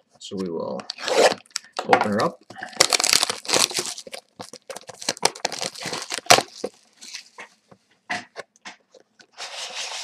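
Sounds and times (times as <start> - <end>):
cardboard tearing: 2.8 - 7.3.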